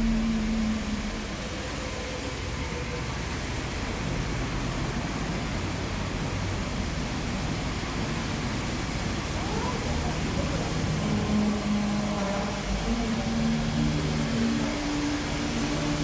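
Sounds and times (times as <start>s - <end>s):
low hum: 0.0s - 4.4s.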